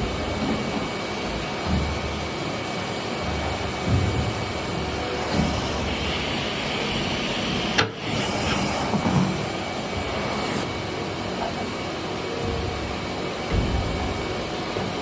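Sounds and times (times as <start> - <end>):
vacuum sucking grain: 3.3 - 10.7.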